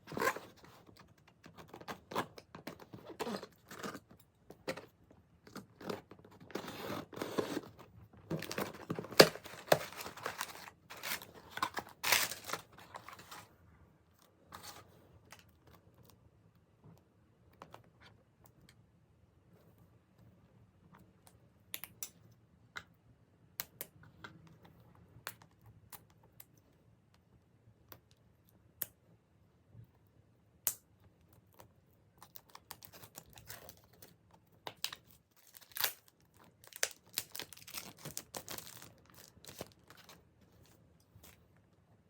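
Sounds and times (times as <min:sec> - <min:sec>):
cardboard and plastic packaging clicks: 0:05.5 - 0:13.4.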